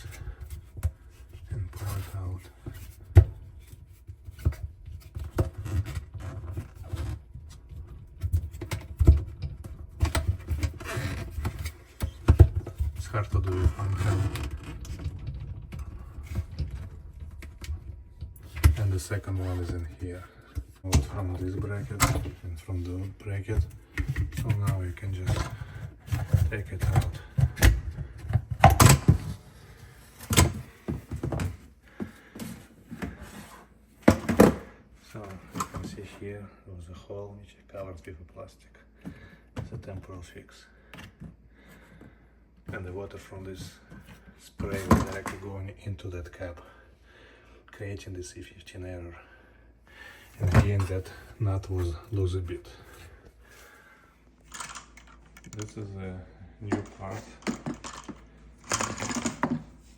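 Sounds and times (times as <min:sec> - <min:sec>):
plastic knocks and clunks: 0:02.8 - 0:18.9, 0:23.6 - 0:29.4, 0:34.0 - 0:34.7, 0:56.7 - 0:59.9.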